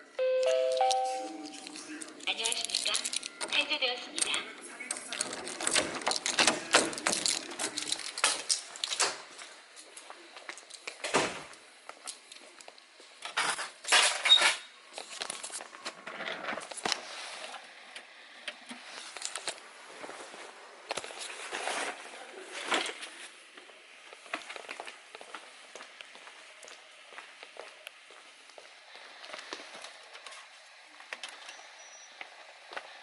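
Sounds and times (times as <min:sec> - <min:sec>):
small objects clattering: 0:01.4 - 0:03.4.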